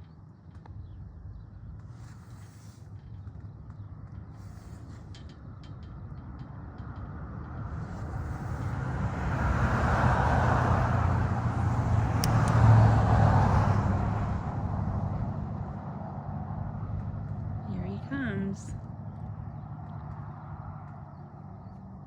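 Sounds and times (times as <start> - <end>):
vehicle passing by: 7.5 - 22.0.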